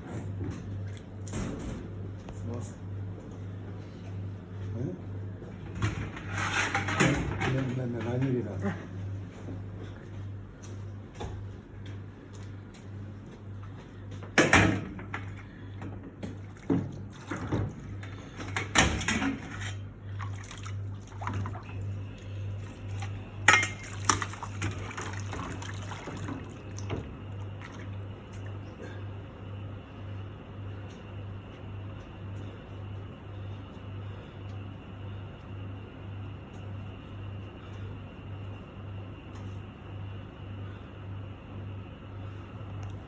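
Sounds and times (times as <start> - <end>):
steady low hum: 0.0 - 43.0
liquid sloshing and splashing: 16.2 - 28.6.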